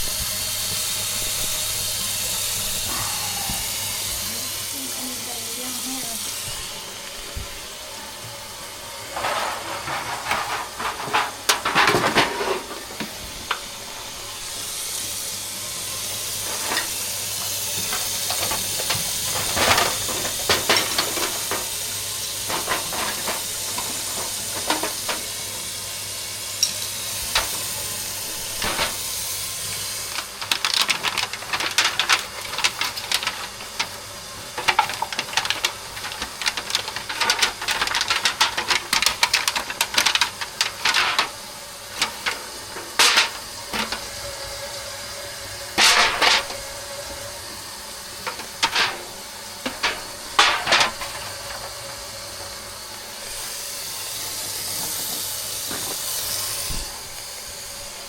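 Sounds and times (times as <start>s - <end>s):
water running from faucet: 0.0s - 9.1s, 13.3s - 42.8s
clatter of small knocks and rattles: 9.1s - 13.6s, 17.8s - 21.8s, 22.4s - 25.3s, 30.1s - 41.4s, 48.2s - 52.0s.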